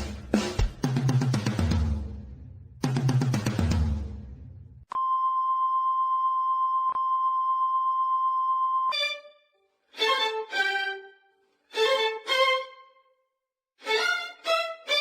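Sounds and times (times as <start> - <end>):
drum music: 0.0 - 4.6.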